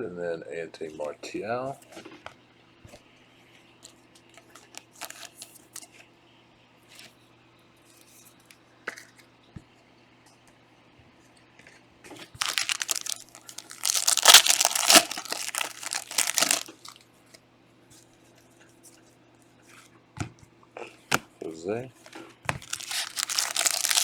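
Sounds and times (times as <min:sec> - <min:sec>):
card pack wrapper tearing: 0:04.7 - 0:05.8, 0:12.4 - 0:17.0, 0:22.6 - 0:24.0.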